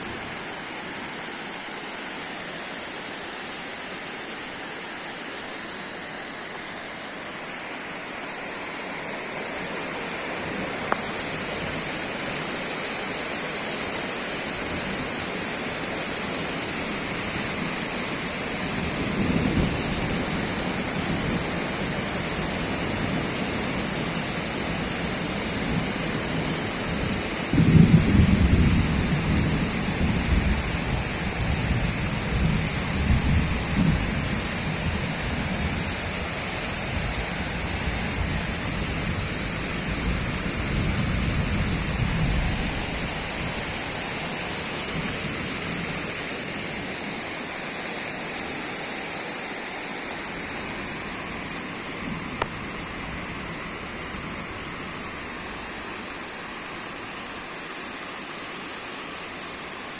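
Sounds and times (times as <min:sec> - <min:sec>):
heavy rain pouring: 0:00.0 - 0:59.9.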